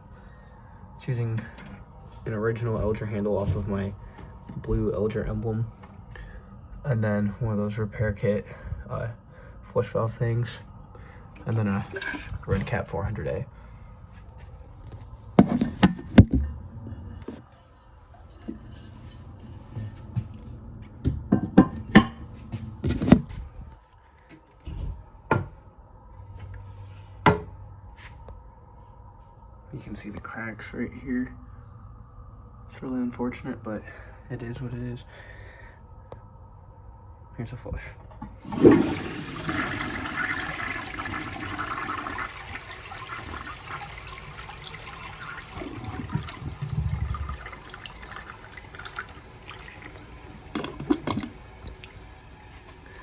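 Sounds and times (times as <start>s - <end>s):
toilet flushing: 11.4s - 12.9s, 38.2s - 53.0s
low gurgle: 38.3s - 53.0s
water trickling: 38.5s - 53.0s.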